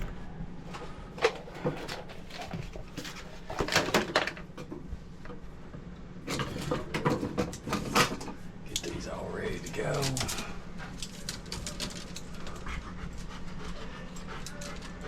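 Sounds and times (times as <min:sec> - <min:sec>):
light clicks and rustles of wires: 0:06.3 - 0:15.0.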